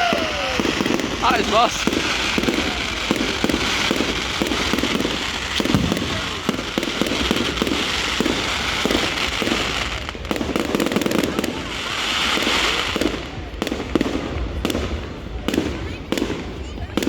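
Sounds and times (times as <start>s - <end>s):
crackling hiss: 0.0s - 13.3s
firework bangs: 0.0s - 17.0s.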